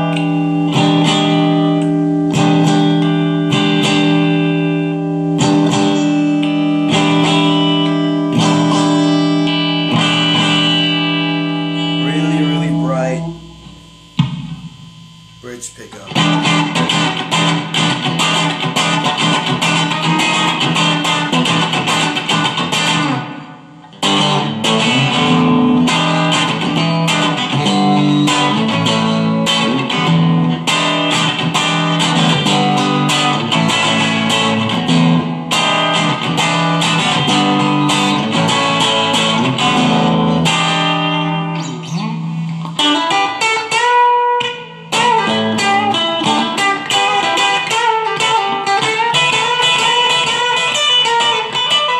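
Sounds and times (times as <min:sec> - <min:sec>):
electric guitar riffs: 0:00.0 - 0:51.9.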